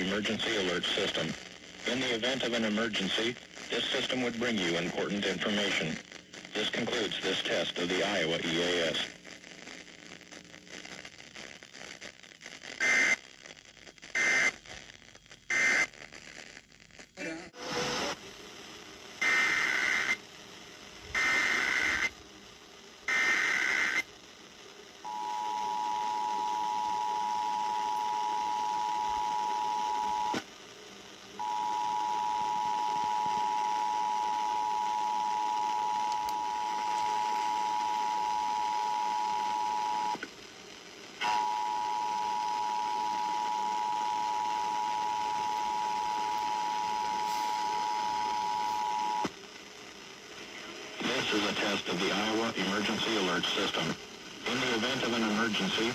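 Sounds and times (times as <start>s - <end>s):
screeching data bursts: 19.2s - 20.2s, 21.2s - 22.1s, 23.1s - 24.1s.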